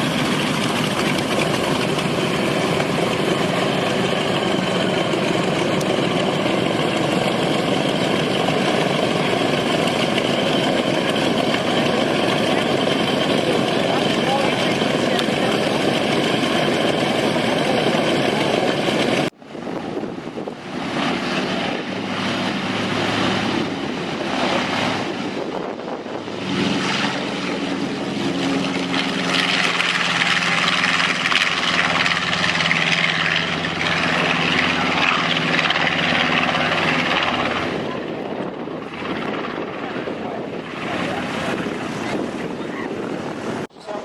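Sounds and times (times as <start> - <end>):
propeller aircraft engine: 0.0 - 44.0
steady engine drone: 0.0 - 44.0.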